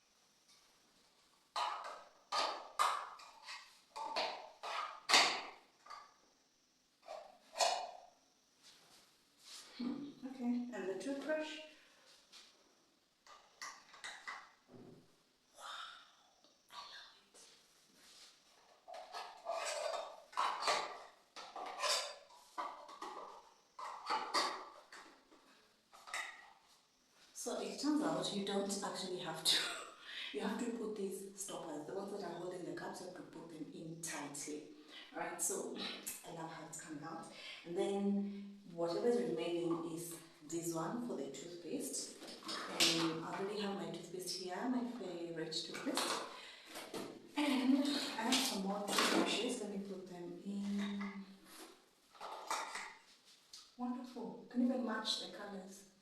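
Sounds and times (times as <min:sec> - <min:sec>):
plastic cups knocking: 0:01.5 - 0:06.0, 0:13.3 - 0:14.6, 0:18.8 - 0:26.4, 0:45.7 - 0:47.1, 0:52.2 - 0:53.0.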